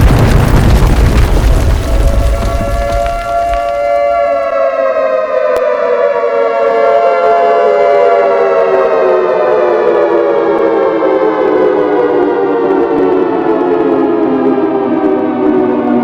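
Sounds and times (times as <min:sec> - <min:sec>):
siren-like tone falling in pitch: 0:03.3 - 0:16.0.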